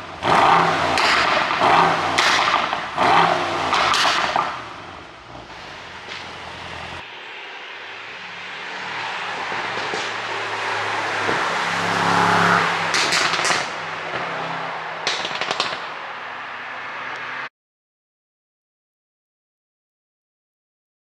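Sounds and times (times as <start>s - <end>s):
car exhaust revving: 0.0s - 4.9s, 5.5s - 17.5s
exhaust pops and crackles: 0.2s - 4.7s, 5.5s - 7.1s, 9.0s - 17.4s.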